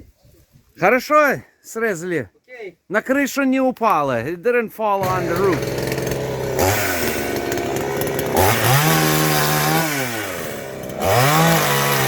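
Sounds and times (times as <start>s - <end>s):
chainsaw revving: 5.0s - 12.0s.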